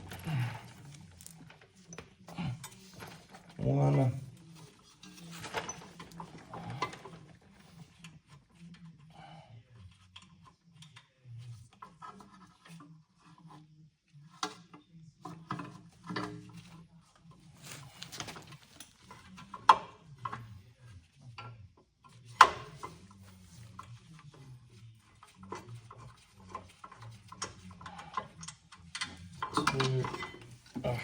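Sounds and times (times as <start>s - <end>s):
hand tools clicking and scraping metal: 0.0s - 4.1s, 25.1s - 31.0s.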